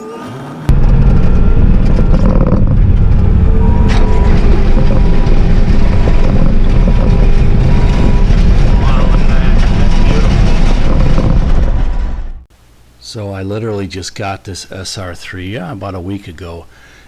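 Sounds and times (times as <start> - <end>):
diesel engine running loud: 0.7 - 12.4
thin steady whine: 0.7 - 14.0.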